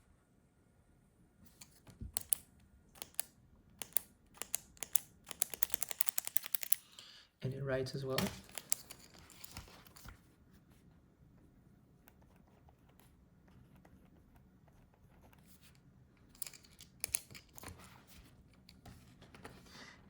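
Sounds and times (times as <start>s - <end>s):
sharp clicks: 1.6s - 7.0s
handling knocks: 8.1s - 8.5s.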